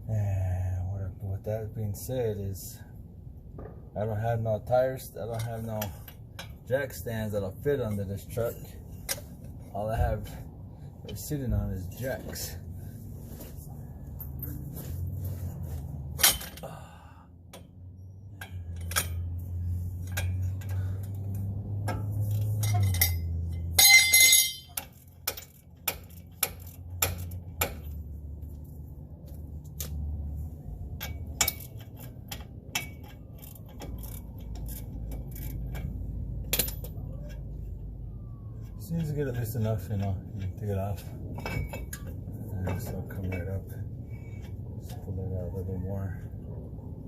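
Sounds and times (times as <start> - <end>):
low steady hum: 0.0 - 47.0
metal tools clinking: 16.1 - 16.8, 17.5 - 28.0, 30.9 - 37.6, 39.0 - 45.1.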